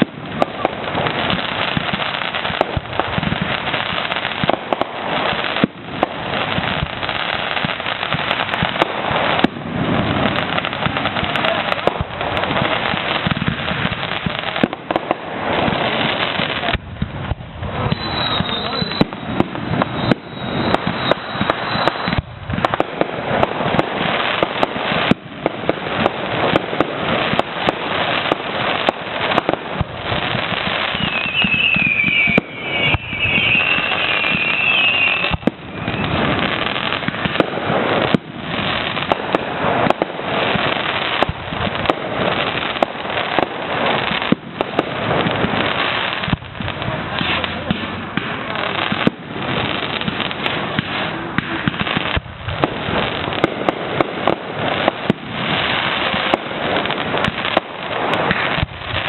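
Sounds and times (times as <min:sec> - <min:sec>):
firework shells bursting and crackling: 0:00.0 - 0:59.0
high wavering whistle: 0:17.9 - 0:22.3, 0:30.9 - 0:36.3.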